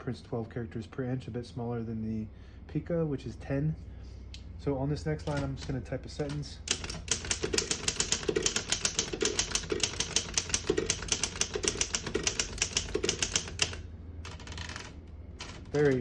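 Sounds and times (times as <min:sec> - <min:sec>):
manual typewriter key strikes: 0:05.2 - 0:16.0.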